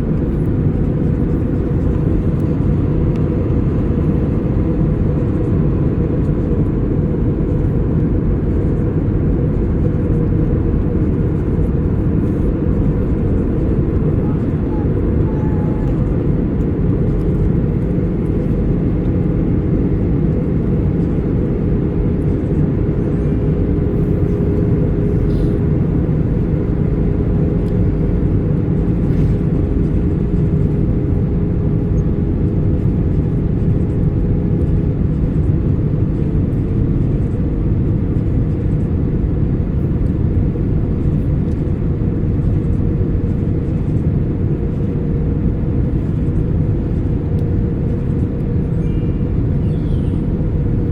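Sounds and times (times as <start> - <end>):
airplane cabin engine drone: 0.0 - 50.9.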